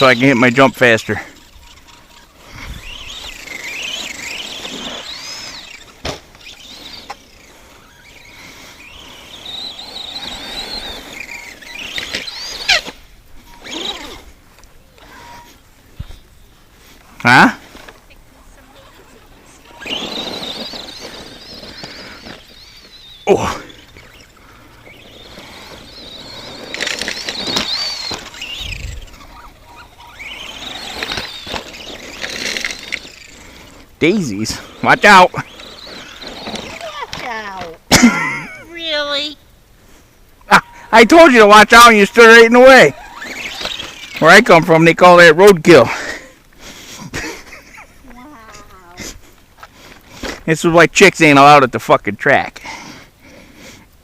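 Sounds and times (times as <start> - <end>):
electric motor and gears whining: 0.0 - 39.2, 40.4 - 46.3.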